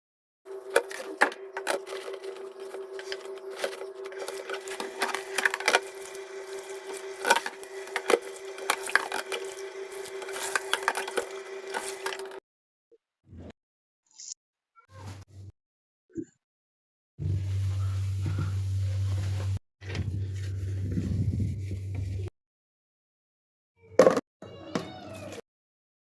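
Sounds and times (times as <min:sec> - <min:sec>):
steady hum: 0:00.5 - 0:12.4
household items clicking and knocking: 0:00.6 - 0:12.4.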